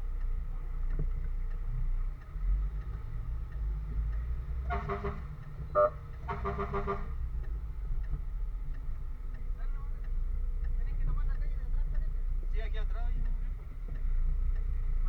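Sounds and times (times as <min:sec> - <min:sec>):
vehicle horn blasts: 0:04.6 - 0:07.2.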